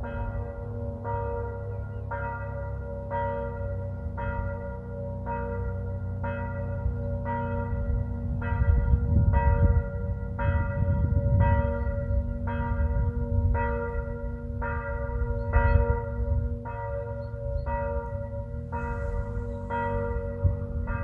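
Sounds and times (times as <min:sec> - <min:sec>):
church bell ringing: 0:00.0 - 0:21.0
low rumble: 0:05.9 - 0:21.0.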